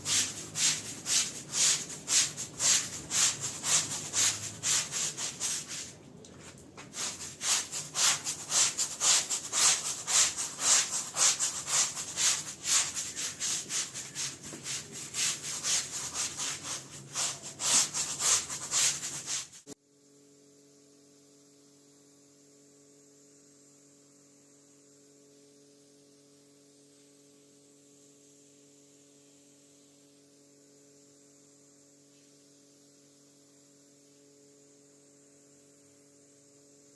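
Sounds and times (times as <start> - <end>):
brush strokes rubbing rug: 0.0 - 19.7.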